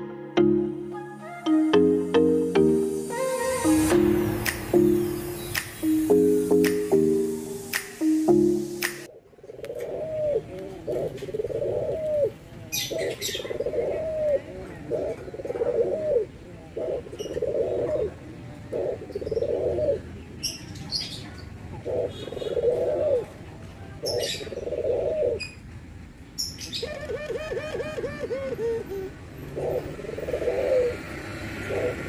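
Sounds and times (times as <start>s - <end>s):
doves cooing: 9.4s - 20.1s, 21.8s - 23.4s, 24.0s - 25.5s, 26.7s - 32.0s.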